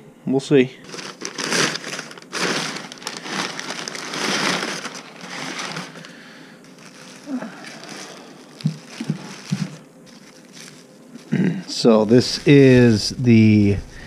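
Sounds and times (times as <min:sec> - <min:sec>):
packaging rustling and crinkling: 0:00.8 - 0:14.0
soft thumps: 0:08.6 - 0:09.8.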